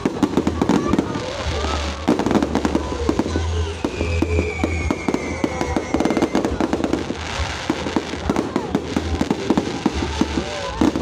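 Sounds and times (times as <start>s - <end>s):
fireworks crackling pops: 0.0s - 11.0s
falling whistling tone: 3.6s - 6.6s.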